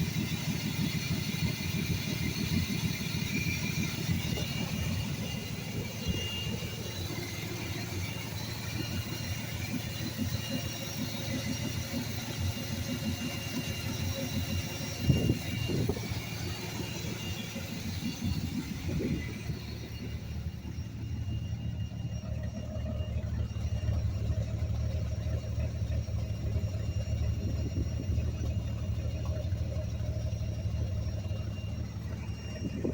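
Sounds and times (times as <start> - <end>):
car engine idling: 0.0 - 32.9.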